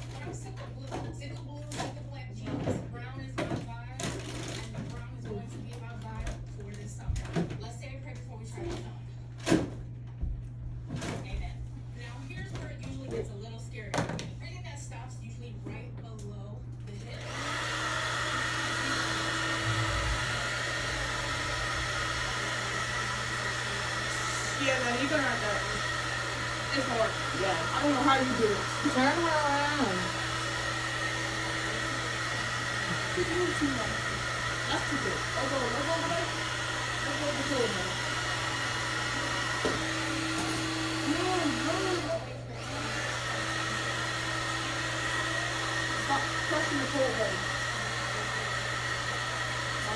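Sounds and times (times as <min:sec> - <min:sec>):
hair dryer blowing: 0:17.0 - 0:49.9.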